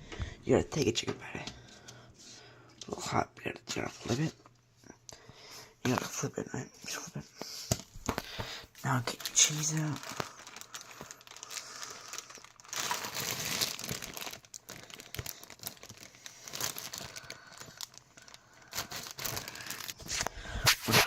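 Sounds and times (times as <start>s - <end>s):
plastic packaging crinkling: 7.8s - 21.0s.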